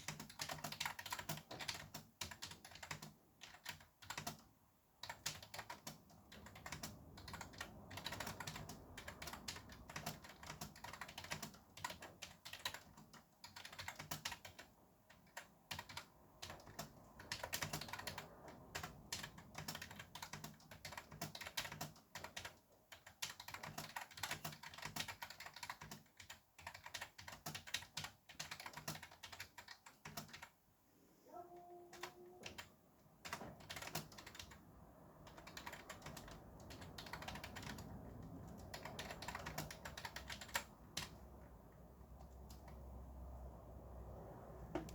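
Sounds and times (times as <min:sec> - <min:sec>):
typing on computer keyboard: 0:00.0 - 0:30.6, 0:31.4 - 0:41.4, 0:42.1 - 0:42.8
faint traffic hiss: 0:27.8 - 0:44.9.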